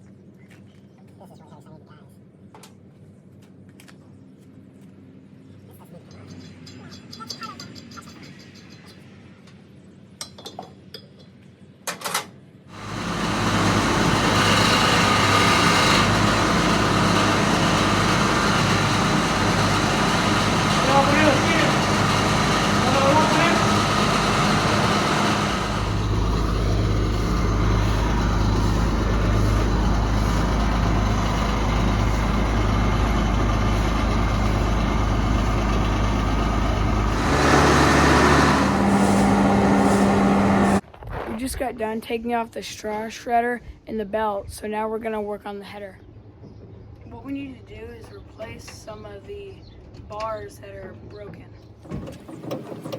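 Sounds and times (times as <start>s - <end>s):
engine running: 12.7s - 40.8s.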